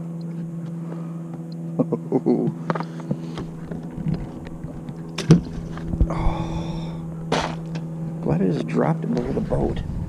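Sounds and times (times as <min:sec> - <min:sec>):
boat motor humming: 0:00.0 - 0:10.0
knocks and clicks of gear: 0:02.5 - 0:06.1.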